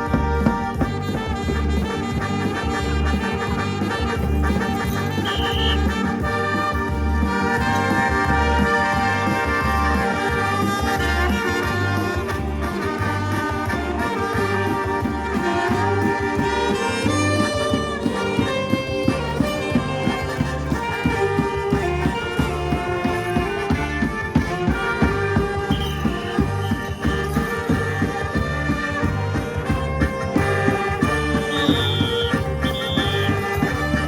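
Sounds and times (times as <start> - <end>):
brass band playing: 0.0 - 34.0
steady drum beat: 0.0 - 34.0.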